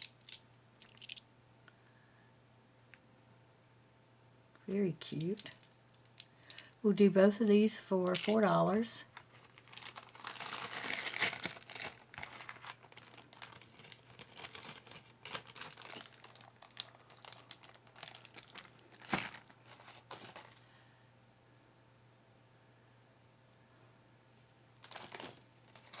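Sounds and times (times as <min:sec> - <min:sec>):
packaging crinkling: 0:00.0 - 0:01.2, 0:05.1 - 0:06.7, 0:08.0 - 0:20.7, 0:24.8 - 0:26.0.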